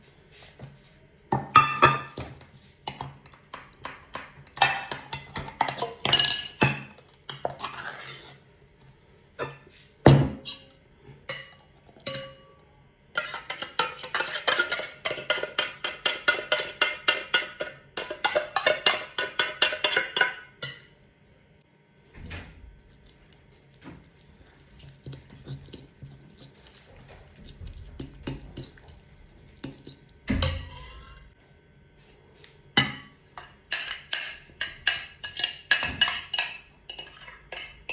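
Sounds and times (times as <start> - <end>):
utensils and dishes clinking: 4.6 - 8.2, 24.8 - 31.4, 32.8 - 37.9.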